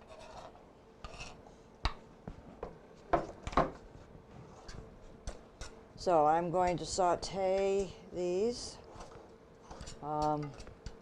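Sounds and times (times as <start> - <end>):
utensil scraping a skillet: 0.0 - 1.4, 8.6 - 10.8.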